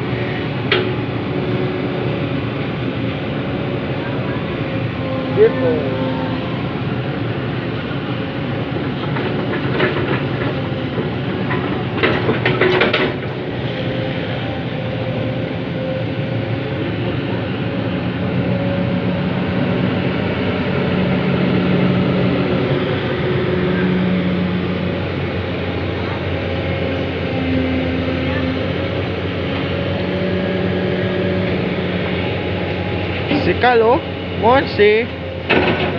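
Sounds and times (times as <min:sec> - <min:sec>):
excavator engine and hydraulics: 0:00.0 - 0:35.9
metal clanking and rattling: 0:09.0 - 0:13.3, 0:35.4 - 0:35.9.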